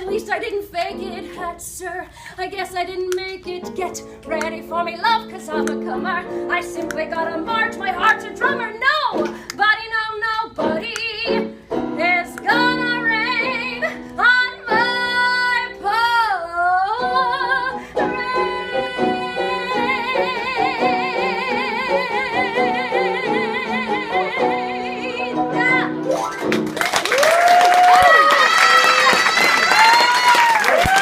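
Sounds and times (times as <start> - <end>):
woman singing show tune: 0.0 - 26.1
instrumental accompaniment: 17.0 - 27.1.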